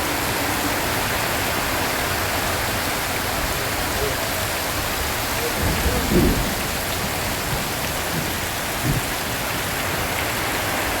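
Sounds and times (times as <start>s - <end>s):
heavy rain on a tin roof: 0.0s - 11.0s.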